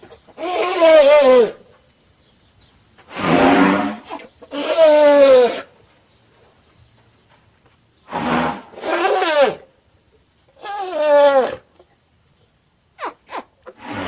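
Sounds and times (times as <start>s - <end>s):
elephant trumpeting: 0.4s - 1.6s, 3.1s - 5.7s, 8.1s - 9.6s, 10.6s - 11.6s, 13.0s - 14.0s
short sharp squeaks: 13.0s - 14.0s.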